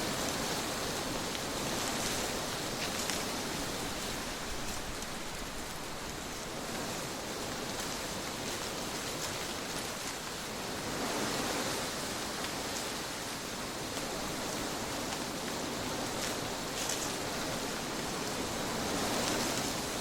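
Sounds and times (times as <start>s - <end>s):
wind blowing: 0.0s - 10.1s.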